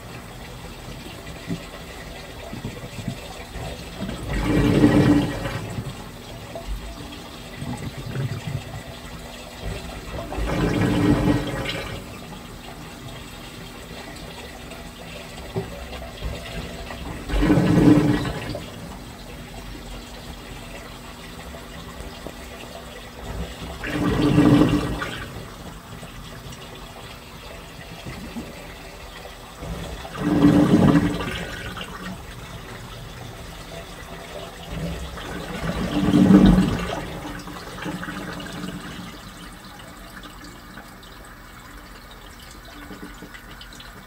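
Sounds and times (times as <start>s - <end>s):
washing machine churning: 0.0s - 44.0s
water and clothes sloshing: 1.1s - 12.3s, 15.6s - 19.4s, 23.2s - 25.9s, 29.6s - 32.7s, 33.7s - 39.6s.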